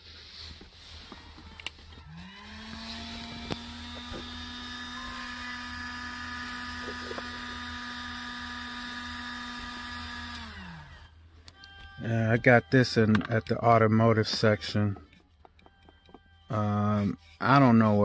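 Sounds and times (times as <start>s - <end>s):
small motor humming: 0.2s - 12.4s.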